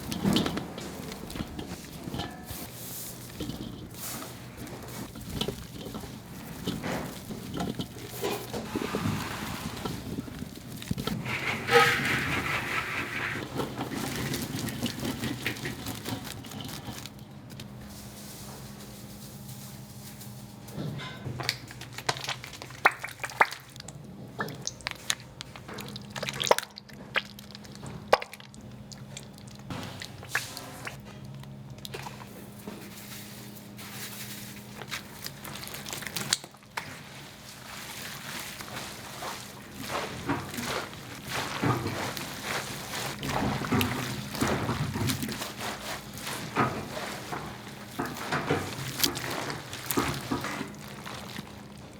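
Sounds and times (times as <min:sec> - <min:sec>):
kitchen clicks and clatter: 0:00.0 - 0:17.7
wet handling of food: 0:00.0 - 0:20.8, 0:21.4 - 0:51.9.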